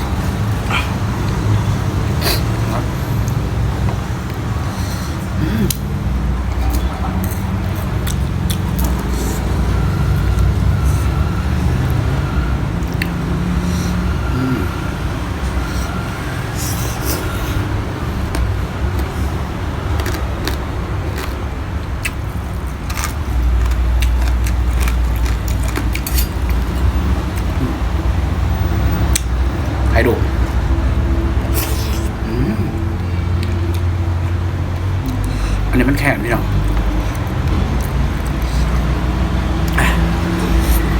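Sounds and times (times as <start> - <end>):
chewing: 6.6 - 12.2, 15.5 - 28.4, 31.4 - 35.7, 36.5 - 40.9.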